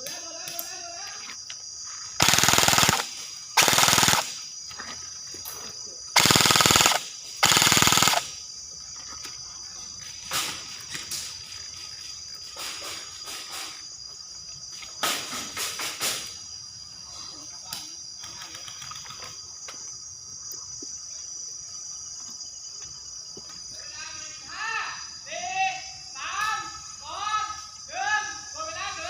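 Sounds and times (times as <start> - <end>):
airsoft gun bursts: 2.2 - 4.4, 6.2 - 8.4.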